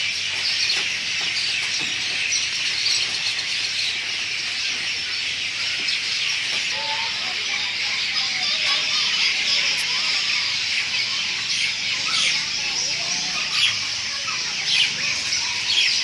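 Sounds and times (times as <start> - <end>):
flock of birds chirping: 0.0 - 16.0.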